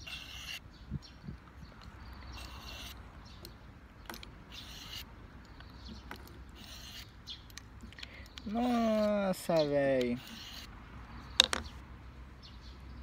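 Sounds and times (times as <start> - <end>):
knife blade scraping on sharpener: 0.0 - 0.6, 2.3 - 3.0, 4.5 - 5.1, 6.2 - 7.1, 8.5 - 10.7.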